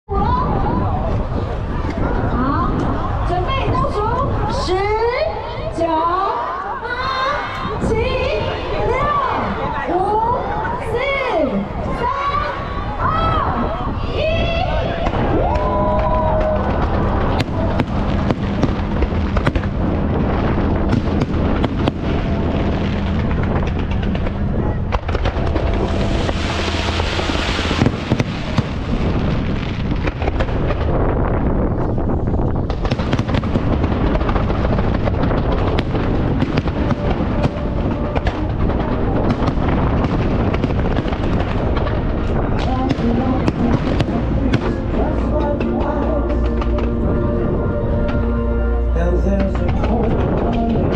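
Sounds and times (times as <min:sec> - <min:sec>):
fireworks bursts and crackling: 0:14.9 - 0:47.0, 0:49.5 - 0:50.9
fireworks hissing: 0:25.0 - 0:30.4.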